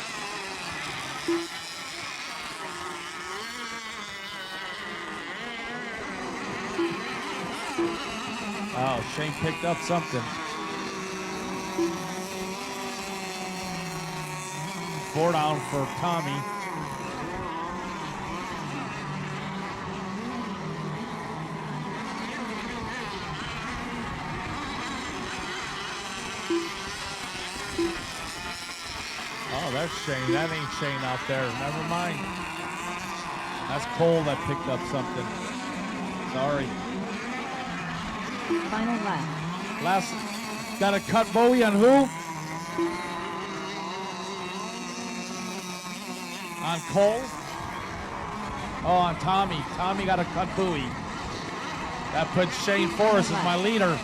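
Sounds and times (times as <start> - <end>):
model boat engines whining: 0.0 - 54.0
short loud beep: 26.5 - 26.9, 27.8 - 28.1, 42.8 - 43.2.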